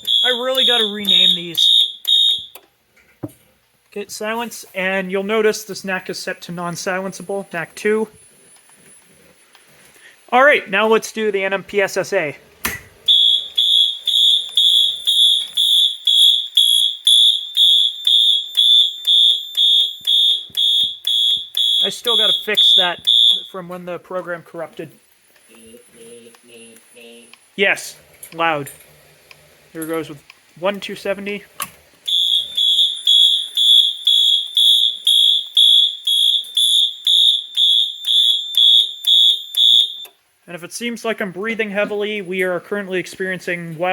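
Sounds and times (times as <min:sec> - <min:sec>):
fire alarm horn pulsing: 0:00.0 - 0:02.6, 0:13.0 - 0:23.7, 0:32.0 - 0:40.2.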